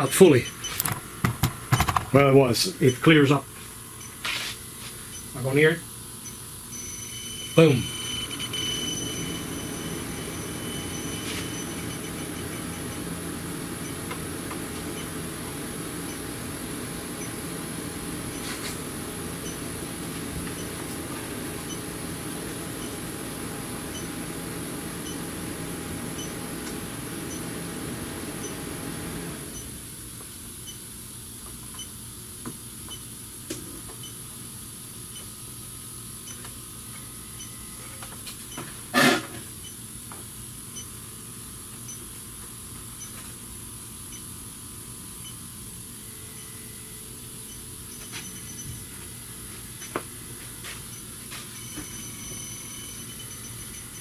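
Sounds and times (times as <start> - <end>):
faint high whine: 5.0 - 12.2
leak detector beeping: 6.2 - 13.0, 18.3 - 18.6, 19.4 - 19.6, 20.5 - 20.8, 23.9 - 24.2, 26.2 - 26.4, 43.0 - 43.2, 46.0 - 48.9, 50.9 - 54.0.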